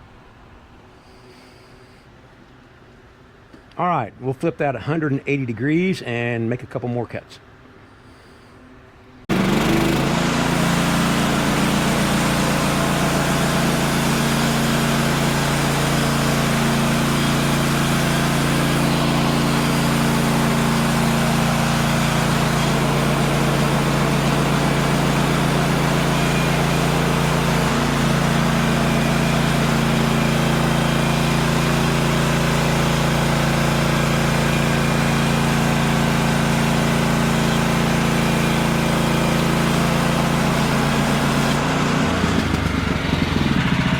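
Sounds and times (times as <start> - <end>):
small gasoline engine running: 9.3 - 43.9.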